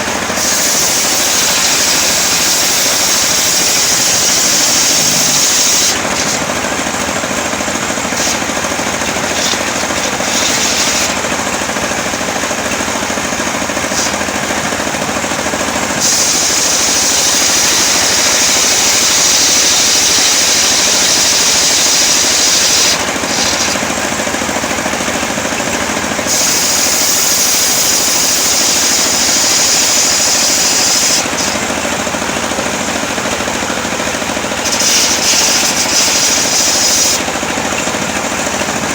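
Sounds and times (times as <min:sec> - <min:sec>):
saw blade hissing whine: 0:00.0 - 0:24.3, 0:26.2 - 0:37.5
sawmill engine: 0:00.0 - 0:38.9.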